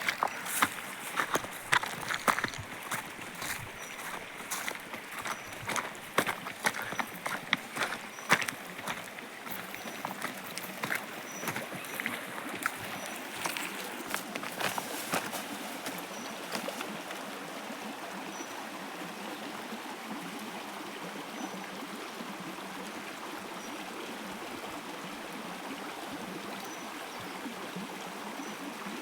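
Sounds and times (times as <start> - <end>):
stream rushing: 0.0 - 21.1.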